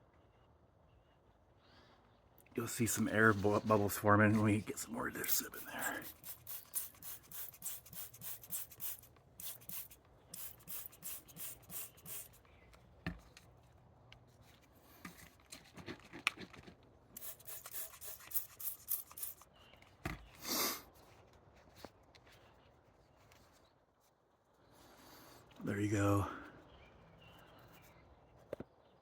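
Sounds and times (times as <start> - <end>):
spray bottle squirting: 4.7 - 12.4, 17.2 - 19.5.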